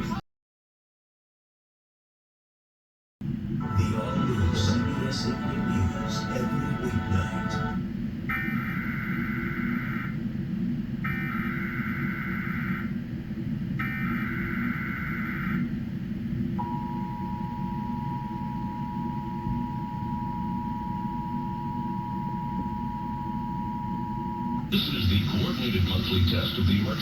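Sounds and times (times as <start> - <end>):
low hum: 3.2 - 27.0
two-tone attention signal: 16.6 - 24.7.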